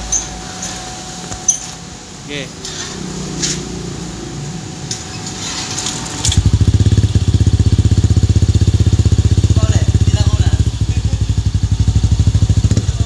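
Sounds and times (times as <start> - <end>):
scooter engine idling: 6.2 - 13.0.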